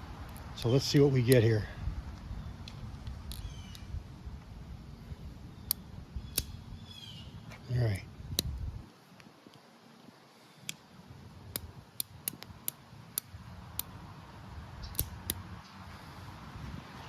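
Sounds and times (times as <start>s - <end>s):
revolver cylinder and hammer clicking: 11.5s - 14.0s.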